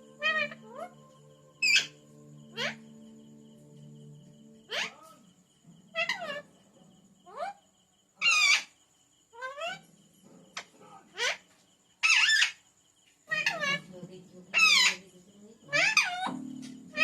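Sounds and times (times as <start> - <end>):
parrot calling: 0.0 - 3.0, 4.7 - 5.3, 5.9 - 6.5, 8.2 - 9.9, 10.6 - 12.6, 13.3 - 13.9, 14.5 - 15.0, 15.6 - 17.0
parrot squawks: 0.2 - 1.0, 1.6 - 2.8, 4.7 - 5.2, 5.9 - 6.4, 8.2 - 8.7, 11.1 - 11.4, 12.0 - 12.6, 13.3 - 13.8, 14.5 - 15.0, 15.7 - 17.0.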